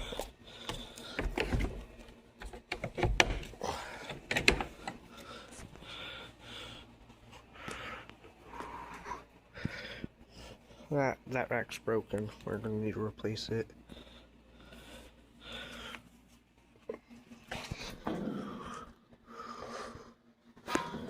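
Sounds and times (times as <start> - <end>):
person breathing heavily: 0.0 - 1.9, 3.5 - 11.1, 13.8 - 16.4, 17.5 - 21.0
sharp knocks and clicks: 2.4 - 3.5, 4.1 - 5.0.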